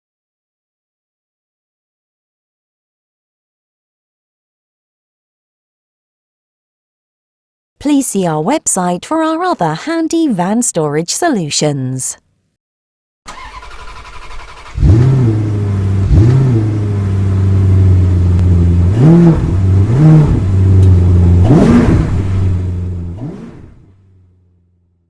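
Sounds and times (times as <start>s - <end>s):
car engine idling and revving: 13.3s - 24.8s.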